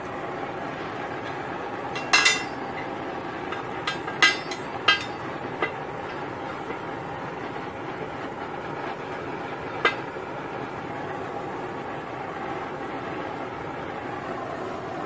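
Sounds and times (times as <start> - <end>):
steady background hiss: 0.0 - 15.0
metal striking steel: 2.0 - 2.9, 3.5 - 5.8.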